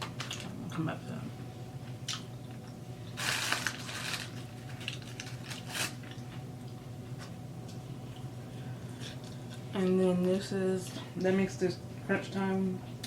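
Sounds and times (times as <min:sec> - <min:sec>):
crunching fried chicken: 0:03.2 - 0:06.4.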